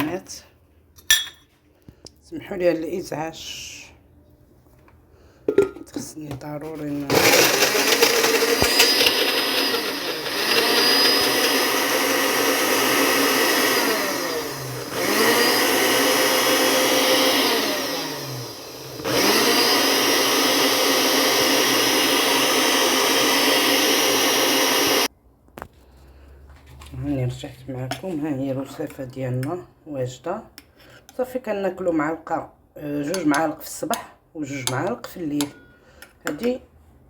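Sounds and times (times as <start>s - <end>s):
blender grinding: 6.9s - 25.1s.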